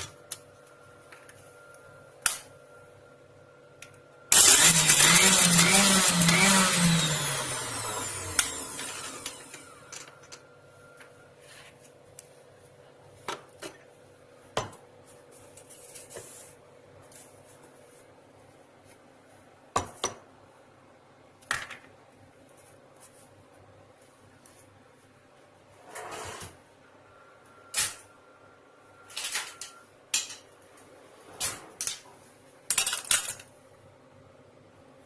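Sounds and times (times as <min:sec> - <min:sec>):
kitchen utensils clicking and knocking: 0:29.2 - 0:30.5, 0:32.7 - 0:33.5.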